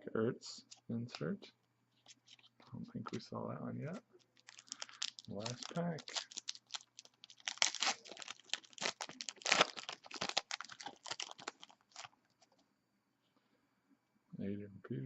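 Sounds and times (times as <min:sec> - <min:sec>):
foil wrapper crinkling: 0:04.2 - 0:12.6.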